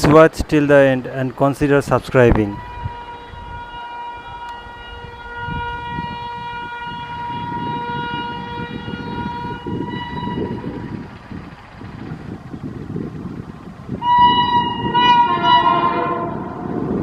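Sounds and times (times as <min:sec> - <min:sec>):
train rumble: 0:00.0 - 0:17.0
locomotive horn shrill note: 0:02.4 - 0:11.0, 0:14.0 - 0:17.0.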